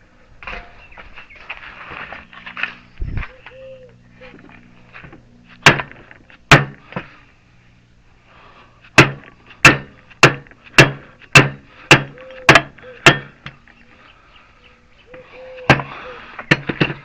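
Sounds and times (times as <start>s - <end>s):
hammer strikes on metal: 5.6s - 6.8s, 9.0s - 13.4s.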